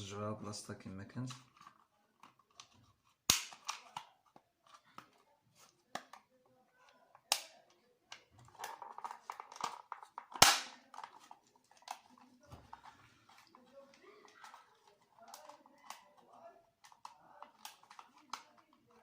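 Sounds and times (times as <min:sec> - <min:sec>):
circuit breaker parts snapping: 0:10.4 - 0:10.7.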